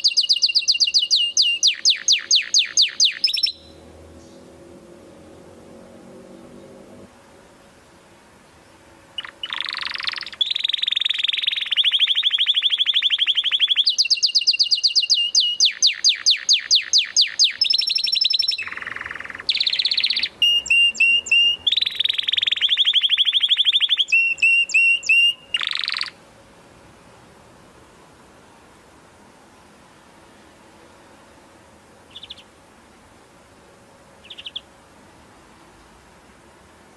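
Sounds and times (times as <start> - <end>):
canary singing trills: 0.0 - 4.6, 9.1 - 26.2, 32.0 - 32.6, 34.2 - 34.8.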